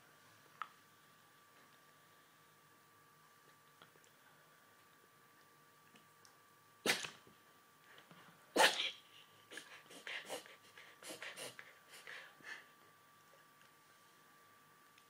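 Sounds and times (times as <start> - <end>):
dog sneezing: 6.8 - 7.2, 8.6 - 9.0.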